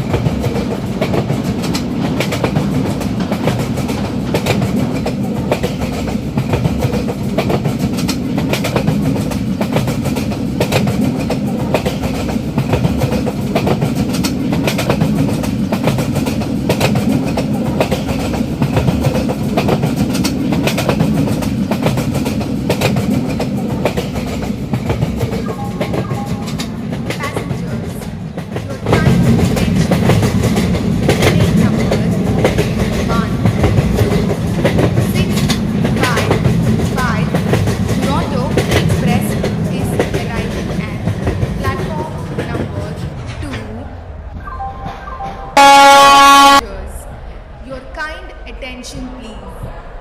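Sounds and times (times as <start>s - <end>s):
wheels clicking over rail joints: 0.0s - 44.2s
train rumbling on track: 0.0s - 50.0s.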